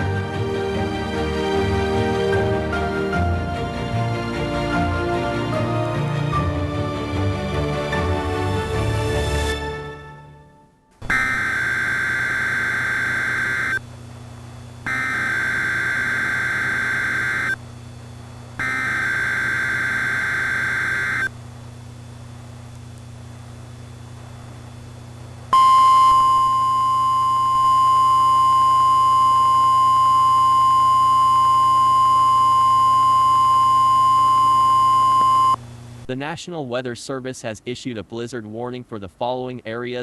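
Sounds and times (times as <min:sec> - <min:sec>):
steady high warning tone: 0:11.0 - 0:21.4, 0:25.5 - 0:35.7
screeching data bursts: 0:11.1 - 0:13.8, 0:14.9 - 0:17.6, 0:18.6 - 0:21.3.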